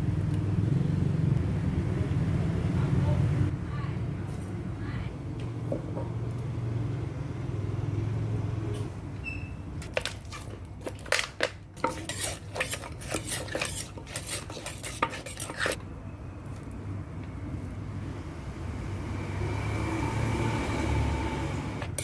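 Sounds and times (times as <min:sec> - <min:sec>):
utensils and dishes clattering: 0:09.8 - 0:15.8.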